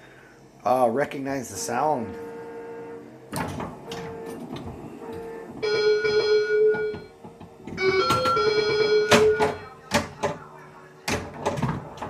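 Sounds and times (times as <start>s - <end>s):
pinball machine electronic beeping: 1.4s - 9.9s.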